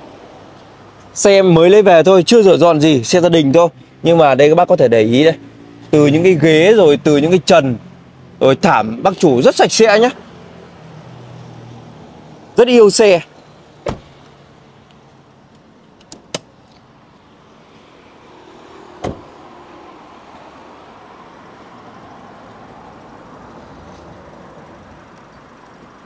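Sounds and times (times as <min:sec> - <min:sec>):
loud thump: 0:13.8 - 0:14.1, 0:19.0 - 0:19.3.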